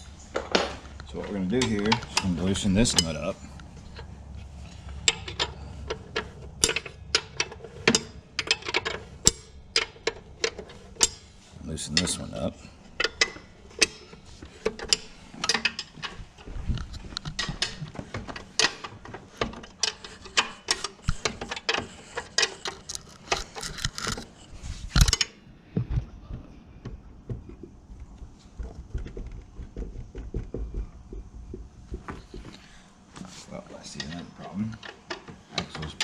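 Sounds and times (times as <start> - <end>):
wrenches clinking against nuts: 1.0 - 3.3, 5.0 - 25.4
low knocks: 25.8 - 32.5.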